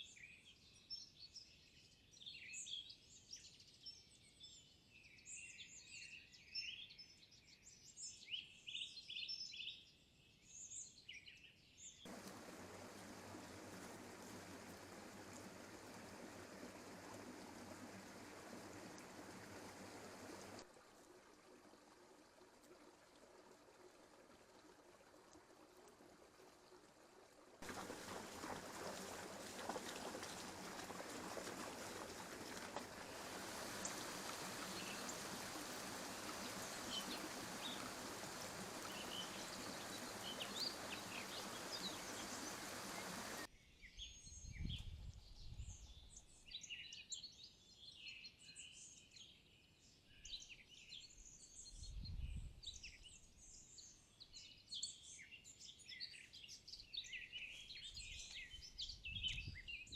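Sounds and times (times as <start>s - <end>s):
songbirds chirping: 11.6s - 20.6s, 27.6s - 44.2s
stream running: 12.1s - 43.5s.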